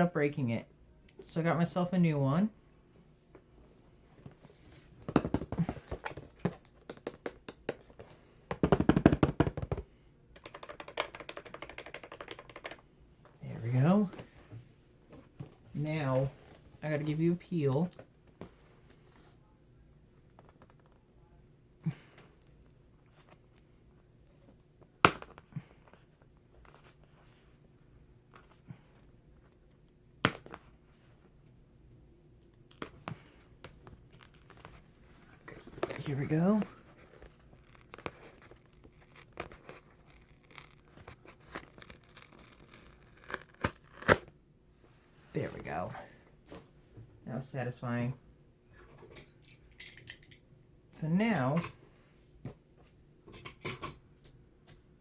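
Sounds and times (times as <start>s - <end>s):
computer keyboard clicking: 10.4s - 12.8s.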